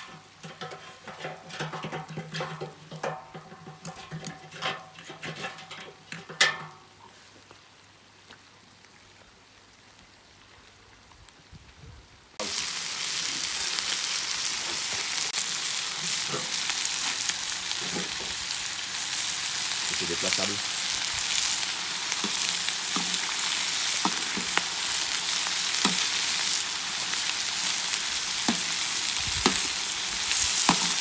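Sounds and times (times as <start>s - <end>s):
spatula scraping pan: 0.0s - 6.6s, 14.7s - 18.6s, 20.8s - 27.1s, 28.4s - 31.0s
food sizzling: 12.4s - 31.0s.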